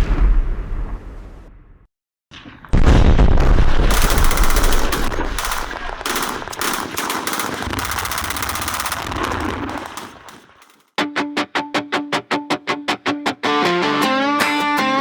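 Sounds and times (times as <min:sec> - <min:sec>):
machine-gun fire: 0:02.8 - 0:10.9.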